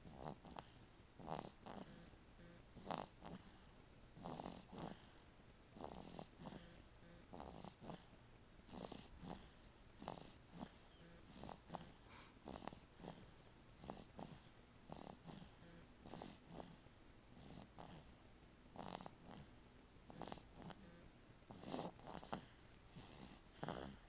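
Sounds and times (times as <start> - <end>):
faint snoring: 0.0 - 24.0.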